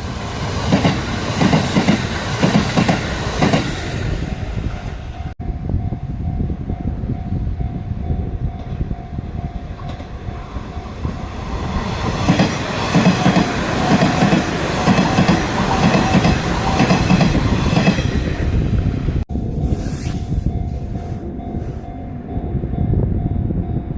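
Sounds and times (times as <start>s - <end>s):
level crossing warning bell: 20.4s - 23.9s.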